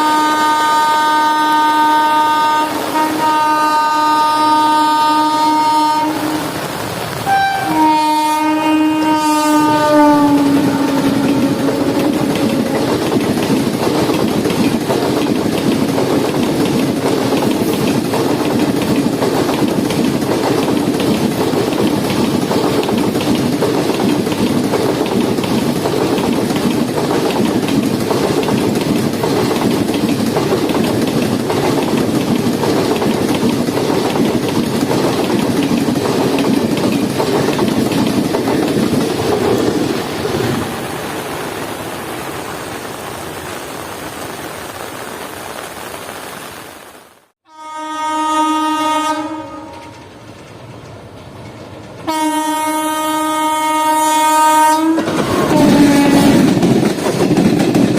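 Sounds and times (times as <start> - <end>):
locomotive horn: 0.0 - 6.6, 7.2 - 12.9, 47.5 - 50.1, 52.0 - 56.6
train coaches rumbling and clacking: 0.0 - 43.4, 48.9 - 57.9.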